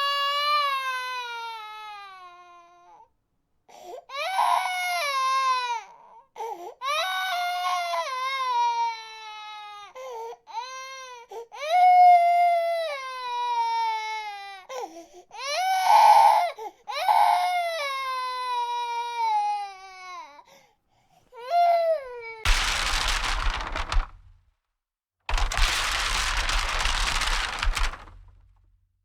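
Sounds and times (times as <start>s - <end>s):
baby crying: 4.1s - 6.0s, 15.4s - 20.4s.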